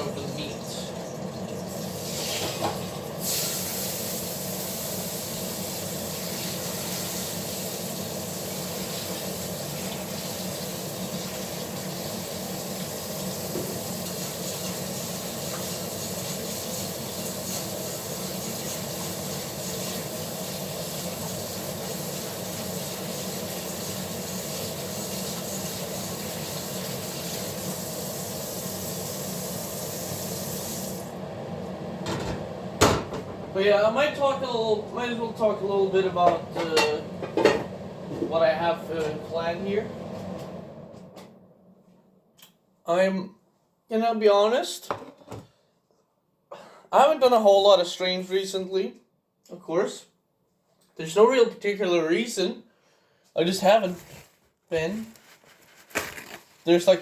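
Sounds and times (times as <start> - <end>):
kitchen tap running: 0.0 - 31.1.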